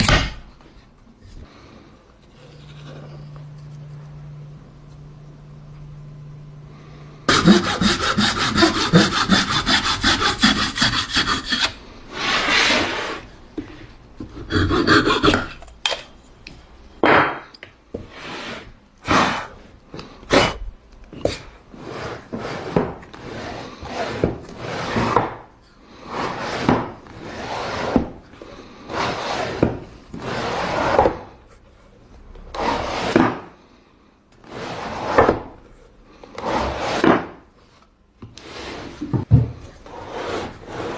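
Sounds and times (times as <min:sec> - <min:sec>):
hand saw strokes on wood: 0:07.3 - 0:13.3, 0:14.4 - 0:15.6.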